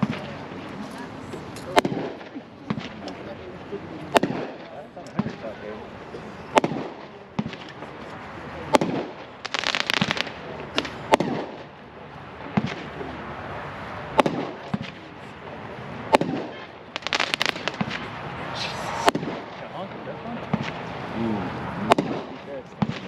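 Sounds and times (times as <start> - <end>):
firework bangs: 0.0 - 0.8, 1.7 - 23.0
rapid firework crackling: 1.7 - 3.5, 4.1 - 5.6, 6.5 - 8.0, 8.6 - 13.2, 13.9 - 21.1, 21.8 - 23.0.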